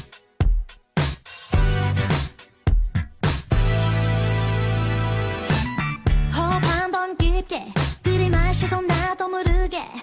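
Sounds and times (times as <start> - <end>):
melody over a steady beat: 0.0 - 6.8.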